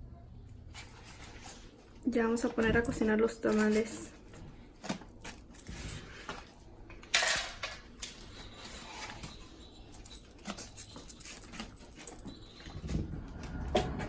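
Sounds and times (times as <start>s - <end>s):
pots and utensils clinking: 5.5s - 14.0s.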